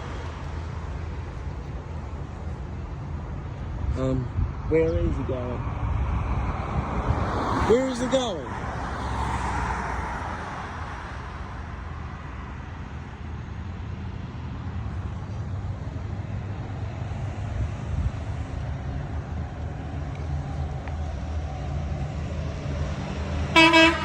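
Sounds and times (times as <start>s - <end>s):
passing vehicles: 0.0s - 24.0s
truck engine rumble: 0.0s - 24.0s
wind on microphone: 3.7s - 7.7s.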